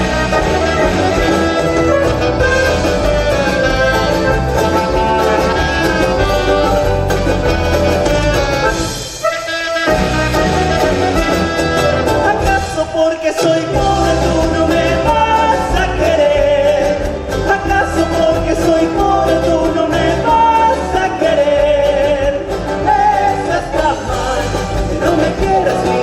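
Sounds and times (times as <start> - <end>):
latin popular band music: 0.0 - 26.0
person singing: 12.0 - 26.0.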